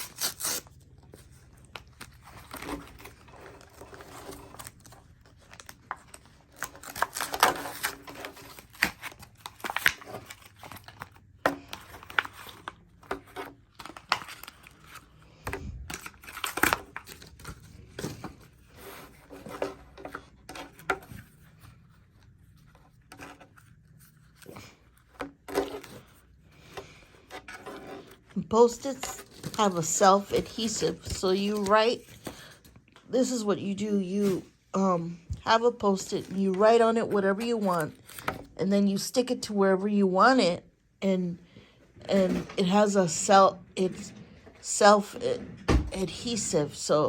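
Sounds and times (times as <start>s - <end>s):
paper and wrapping crinkling: 0.0s - 32.7s.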